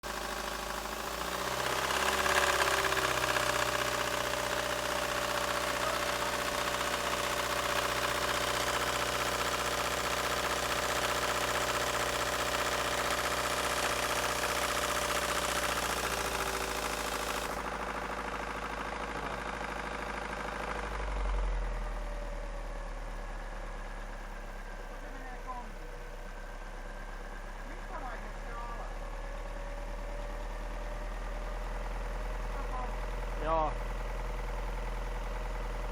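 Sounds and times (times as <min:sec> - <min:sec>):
car engine idling: 0:00.0 - 0:35.9.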